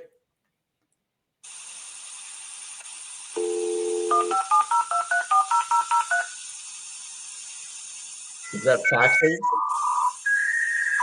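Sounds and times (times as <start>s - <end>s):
phone line hiss: 3.3s - 6.6s, 7.6s - 11.0s
dial tone: 3.4s - 6.3s
touch-tone dialing beeps: 3.4s - 6.4s.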